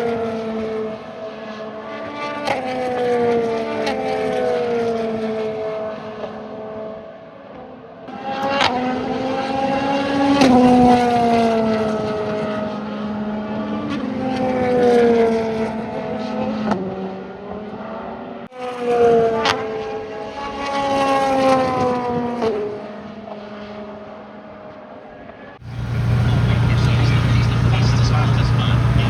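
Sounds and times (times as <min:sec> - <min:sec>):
race cars passing at speed: 0:25.6 - 0:29.0
sharp engine cracks: 0:25.6 - 0:29.0.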